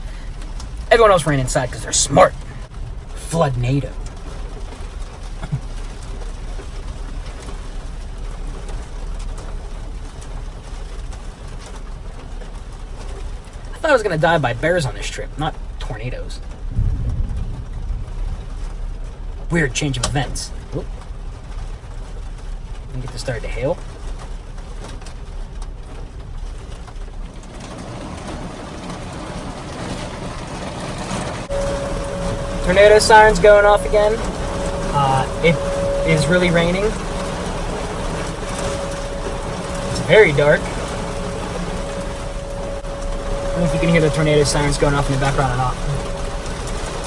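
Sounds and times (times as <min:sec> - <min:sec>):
heavy rain: 0:00.0 - 0:47.0
wind: 0:00.0 - 0:47.0
low rumble: 0:16.4 - 0:23.0, 0:23.8 - 0:47.0.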